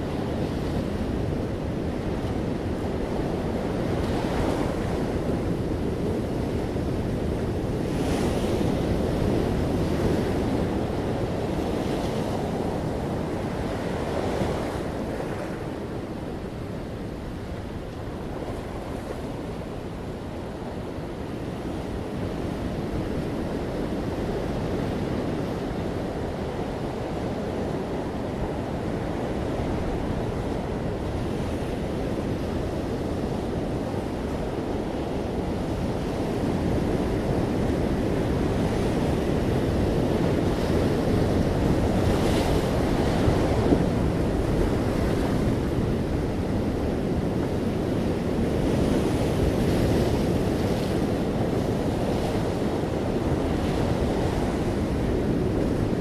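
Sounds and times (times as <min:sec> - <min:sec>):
waves breaking on beach: 0:00.0 - 0:56.0.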